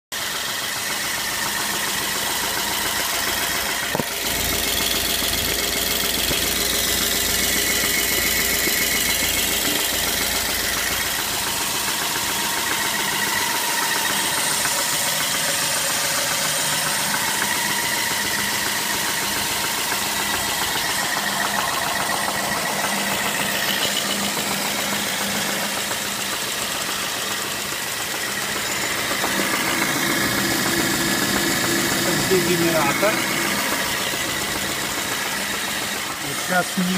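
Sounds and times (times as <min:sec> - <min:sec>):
car engine idling: 0:00.1 - 0:36.9
engine knock: 0:00.1 - 0:36.9.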